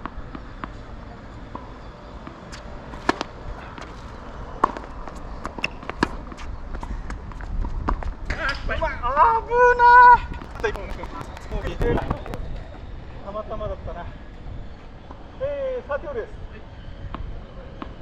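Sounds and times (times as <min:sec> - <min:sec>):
wind rumble on microphone: 0:06.4 - 0:15.4.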